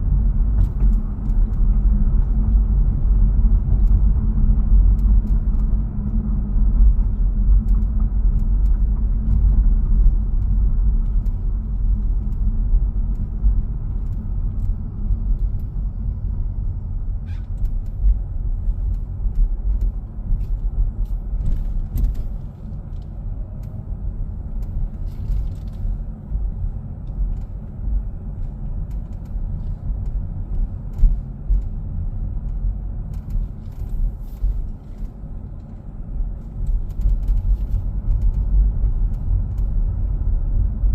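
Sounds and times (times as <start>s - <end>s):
road rumble inside car cabin: 0.0s - 40.9s
faint clicks and creaks: 13.1s - 15.8s, 17.2s - 23.8s, 24.5s - 26.0s, 26.6s - 27.8s, 28.4s - 40.2s.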